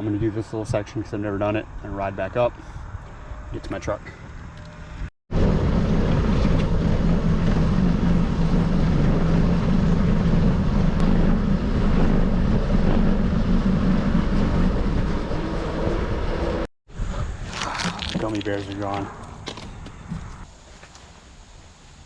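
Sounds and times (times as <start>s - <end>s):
wind rushing on microphone: 0.0s - 20.4s
bicycle rolling noise: 4.4s - 16.6s, 17.2s - 21.2s.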